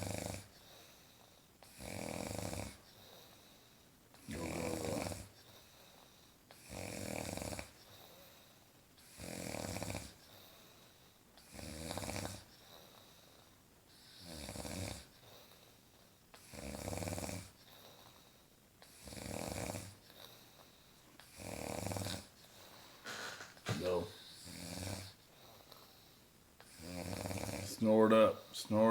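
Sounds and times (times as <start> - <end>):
loud snoring: 0.0 - 0.6, 1.6 - 2.8, 4.2 - 5.4, 6.5 - 7.8, 9.0 - 10.2, 11.4 - 12.5, 14.0 - 15.1, 16.4 - 17.6, 18.8 - 20.0, 21.3 - 25.2, 26.6 - 28.5
quiet breathing: 0.0 - 28.9.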